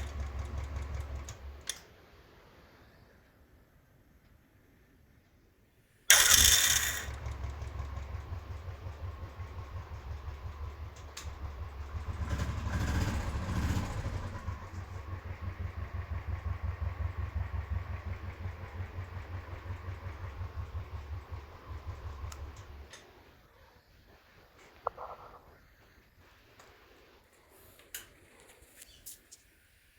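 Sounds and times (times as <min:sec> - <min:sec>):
motorcycle engine running: 0:00.0 - 0:01.7, 0:06.1 - 0:22.9
motorcycle electric starter: 0:00.0 - 0:01.9, 0:06.1 - 0:23.1.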